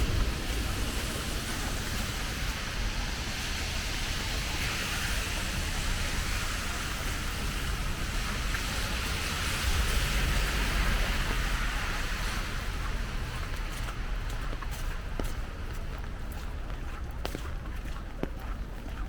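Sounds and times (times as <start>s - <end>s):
low rumble: 0.0s - 4.4s
steady rain: 0.0s - 17.6s
wet street hiss: 0.0s - 18.8s.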